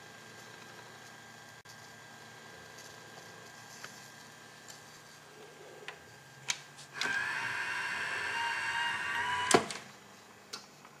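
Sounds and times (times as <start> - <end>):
motor whirring whine: 6.9 - 10.0.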